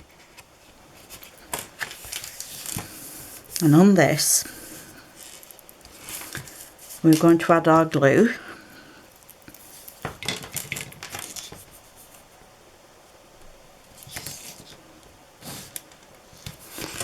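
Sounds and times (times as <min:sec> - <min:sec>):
card stock rustling and tapping: 0:00.2 - 0:03.7, 0:15.6 - 0:17.0.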